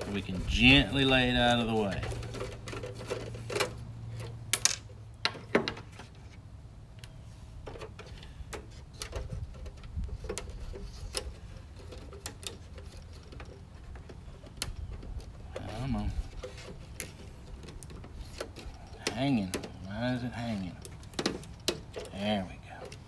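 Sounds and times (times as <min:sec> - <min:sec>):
plastic and metal parts clicking: 0:00.0 - 0:06.2, 0:07.0 - 0:23.0.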